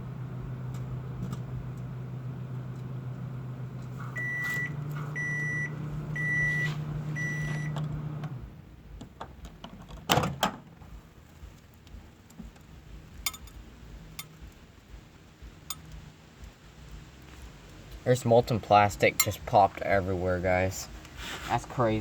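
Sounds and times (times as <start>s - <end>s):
microwave oven humming: 0.0s - 9.4s
microwave beeps: 4.2s - 8.2s.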